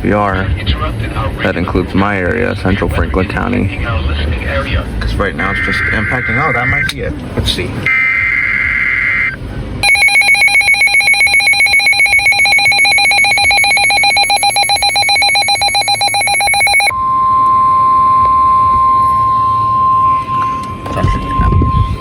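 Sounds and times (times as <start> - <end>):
electronic alarm beeping: 5.3 - 6.9, 7.9 - 22.0
steady single-pitched tone: 7.9 - 22.0.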